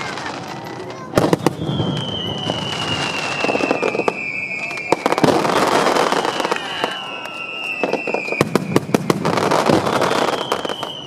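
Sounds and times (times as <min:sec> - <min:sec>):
fireworks bangs and crackles: 0:00.0 - 0:11.0
descending whistling tone: 0:01.3 - 0:09.0, 0:09.9 - 0:11.0.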